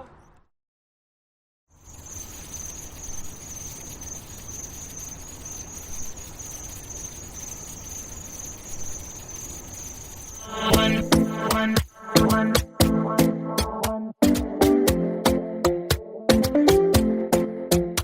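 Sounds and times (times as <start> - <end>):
crickets chirping: 1.7 - 12.5
background hiss: 1.8 - 12.7.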